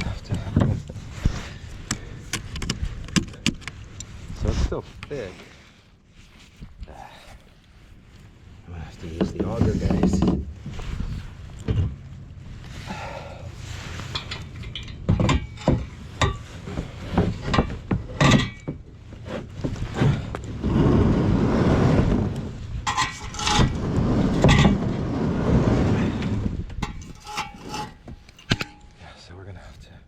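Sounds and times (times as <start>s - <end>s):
tool scraping ice: 22.9s - 28.5s.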